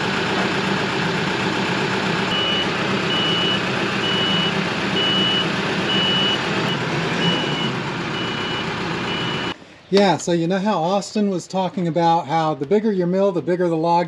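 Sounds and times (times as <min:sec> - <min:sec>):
heavy machine engine running: 0:00.0 - 0:09.6
reversing alarm beeps: 0:02.3 - 0:09.6.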